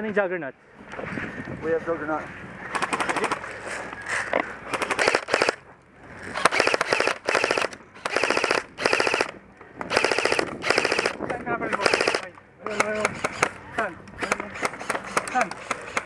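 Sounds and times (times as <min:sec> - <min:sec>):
airsoft guns firing bursts: 0:02.7 - 0:03.5, 0:04.7 - 0:05.6, 0:06.4 - 0:13.6, 0:14.2 - 0:16.0.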